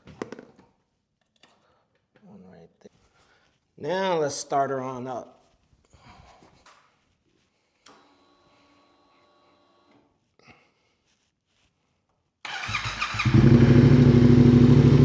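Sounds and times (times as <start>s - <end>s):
motorcycle engine starting and idling: 12.5s - 15.0s.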